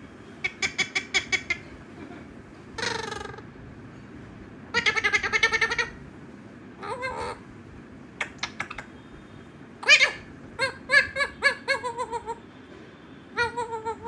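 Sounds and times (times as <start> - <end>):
parrot calls and squawks: 0.4 - 1.8, 2.8 - 3.5, 4.7 - 6.0, 6.8 - 7.5, 8.2 - 9.0, 9.8 - 12.5, 13.3 - 14.0.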